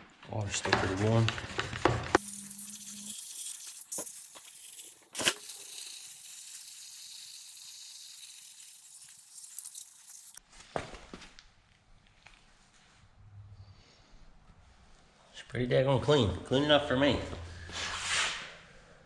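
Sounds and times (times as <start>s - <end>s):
sprayer hissing water jet: 2.2s - 10.4s.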